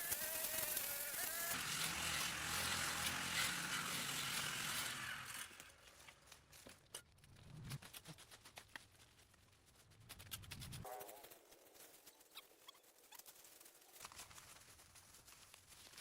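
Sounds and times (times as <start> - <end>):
pressure washer motor humming: 0.0 - 5.7.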